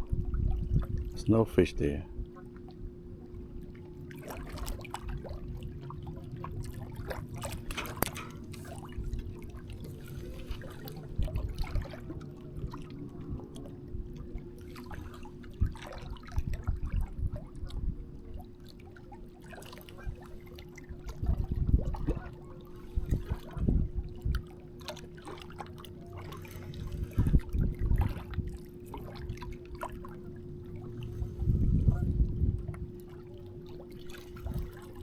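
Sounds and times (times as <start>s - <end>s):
steady low hum: 0.0s - 35.0s
water lapping at bank: 0.0s - 35.0s
low rumbling: 20.0s - 25.3s, 25.9s - 35.0s.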